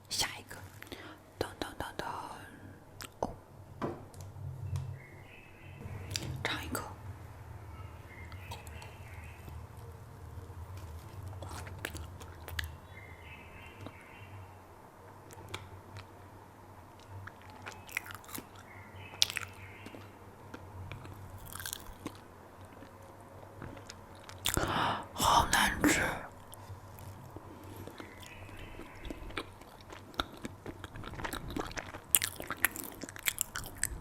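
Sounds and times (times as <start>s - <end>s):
faint low hum: 0.0s - 34.0s
mouth clicks and smacks: 6.1s - 6.8s, 23.7s - 34.0s
chewing bread: 8.3s - 12.8s, 15.1s - 16.2s, 16.9s - 24.8s, 26.3s - 34.0s.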